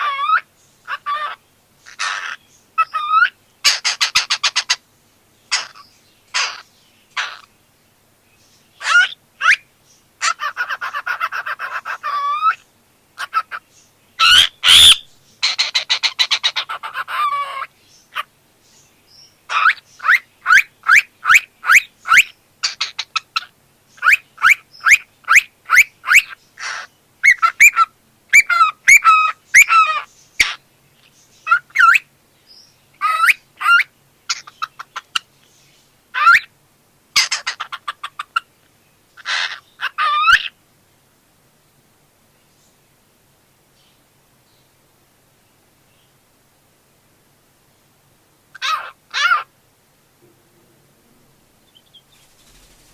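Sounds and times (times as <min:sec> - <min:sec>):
buzzy rattling bird call: 0:00.0 - 0:04.8, 0:51.7 - 0:52.9
cockatiel chirping: 0:00.0 - 0:04.8, 0:05.5 - 0:06.6, 0:07.2 - 0:07.5, 0:08.8 - 0:09.6, 0:10.2 - 0:12.6, 0:14.2 - 0:18.3, 0:19.5 - 0:30.6, 0:31.4 - 0:32.1, 0:33.0 - 0:35.3, 0:36.2 - 0:36.5, 0:37.2 - 0:38.5, 0:39.2 - 0:40.5, 0:48.6 - 0:49.5
harsh bird call: 0:14.2 - 0:18.3.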